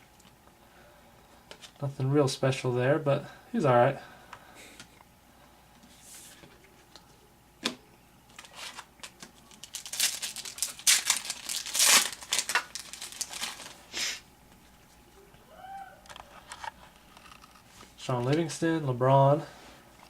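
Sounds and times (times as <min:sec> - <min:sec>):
card pack wrapper tearing: 0:08.3 - 0:13.8.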